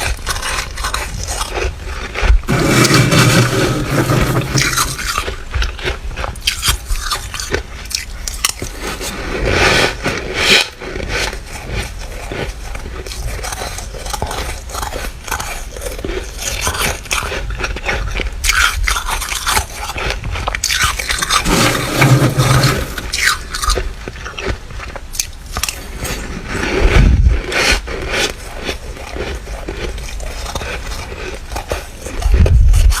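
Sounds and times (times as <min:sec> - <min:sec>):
chewing crunchy frost: 0:00.0 - 0:33.0
low bumps: 0:25.9 - 0:28.1.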